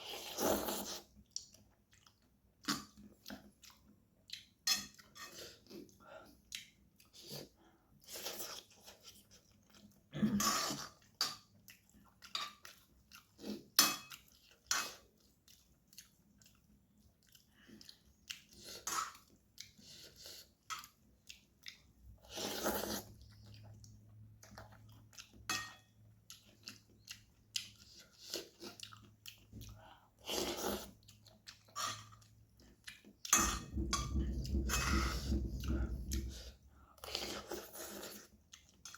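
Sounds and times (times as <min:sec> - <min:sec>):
person chewing noodles: 0:00.0 - 0:38.9.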